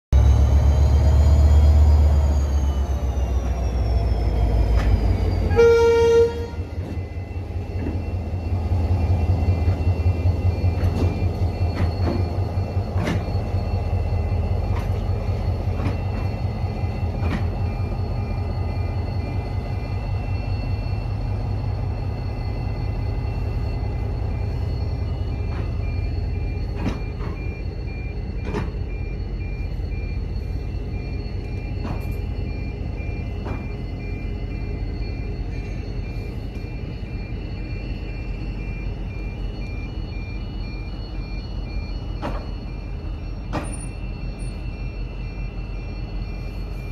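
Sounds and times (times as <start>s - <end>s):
diesel engine rumbling: 0.1s - 46.9s
train horn blast: 5.5s - 6.8s.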